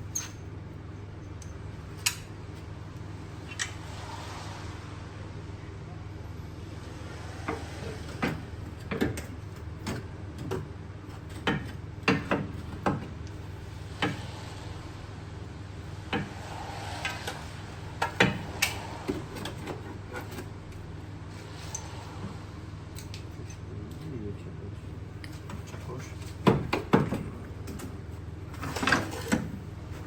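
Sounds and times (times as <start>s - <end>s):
steady low hum: 0.0s - 30.0s
metal parts knocking and clinking: 0.1s - 0.5s.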